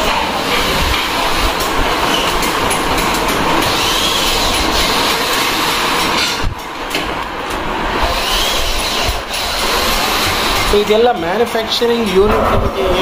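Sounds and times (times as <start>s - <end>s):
machinery clattering: 0.0s - 13.0s.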